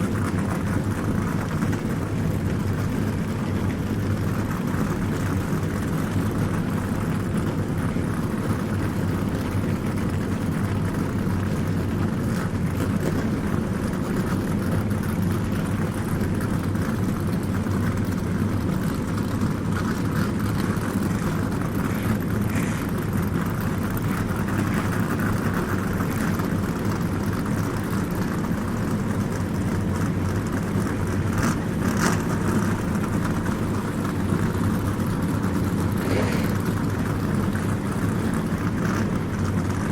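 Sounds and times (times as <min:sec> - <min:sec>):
racing car engines droning: 0:00.0 - 0:39.9
brief sharp sounds: 0:36.0 - 0:36.7.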